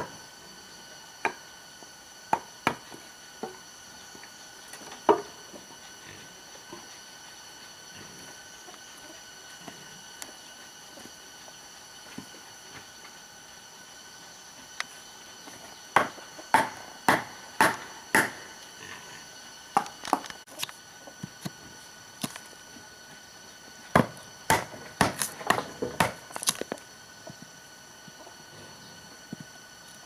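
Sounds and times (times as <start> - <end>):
tool chopping into wood: 16.0 - 18.4, 24.0 - 26.6.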